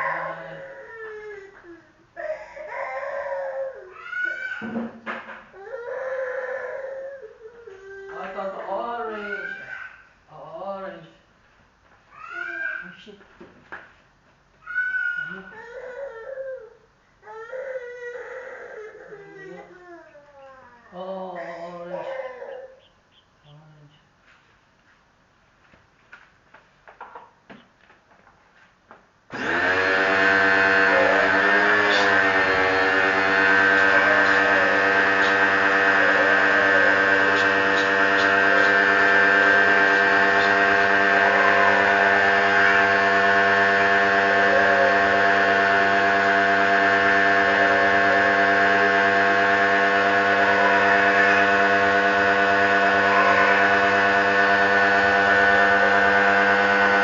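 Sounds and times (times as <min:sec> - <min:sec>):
pressure washer motor hum: 0:00.0 - 0:00.7, 0:29.3 - 0:57.0.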